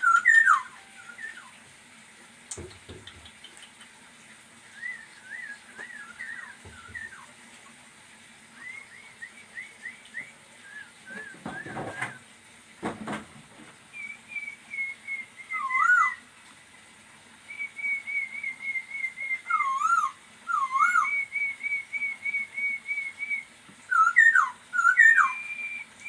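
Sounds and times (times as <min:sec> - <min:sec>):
laughingthrush whistling song: 0:00.0 - 0:01.6, 0:04.7 - 0:07.3, 0:08.5 - 0:12.2, 0:13.9 - 0:16.2, 0:17.5 - 0:26.0.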